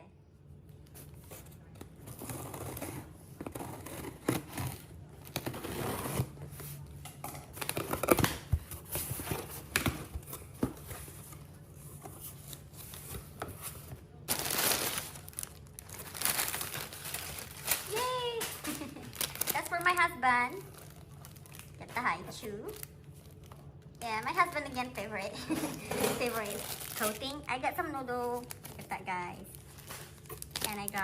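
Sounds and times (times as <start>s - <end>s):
packing material rustling: 7.5s - 23.8s, 26.1s - 31.0s.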